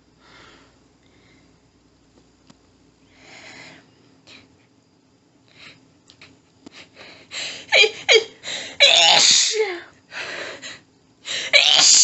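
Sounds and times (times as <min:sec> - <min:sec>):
woman sneezing: 0:07.7 - 0:09.8, 0:11.4 - 0:12.0.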